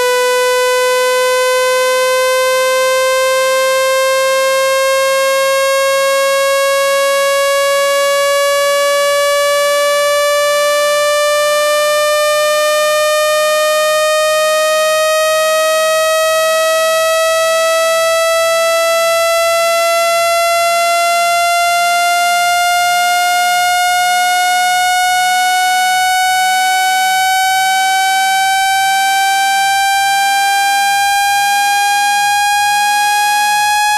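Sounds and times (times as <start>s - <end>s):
buzzy tone sweeping upward: 7.8s - 33.9s.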